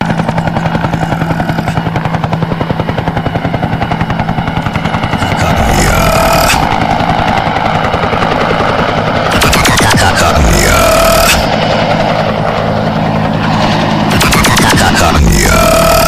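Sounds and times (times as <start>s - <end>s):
rapid pulsing electronic effects: 0.0s - 2.0s, 4.5s - 16.0s
swooping electronic tone: 0.3s - 1.8s.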